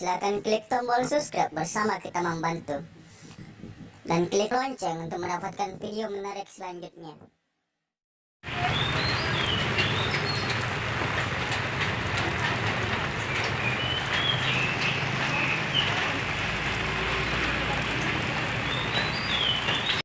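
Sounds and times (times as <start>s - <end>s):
rain hiss: 8.5s - 19.9s.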